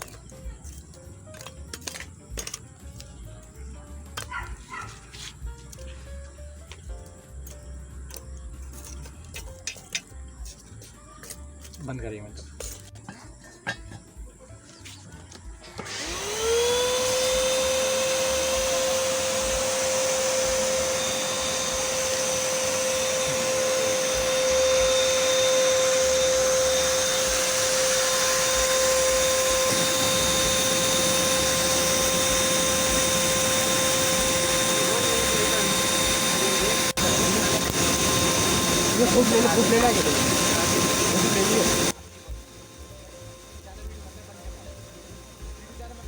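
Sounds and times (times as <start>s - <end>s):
compressor motor whine: 15.4s - 46.0s.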